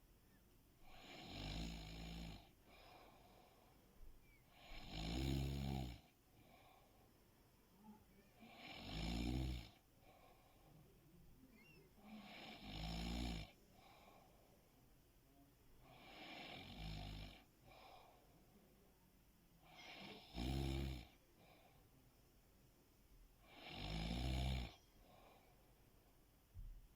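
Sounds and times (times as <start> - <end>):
person snoring: 0.8 - 2.5, 4.5 - 6.0, 8.4 - 9.8, 12.0 - 13.6, 15.9 - 17.5, 19.7 - 21.2, 23.5 - 24.8.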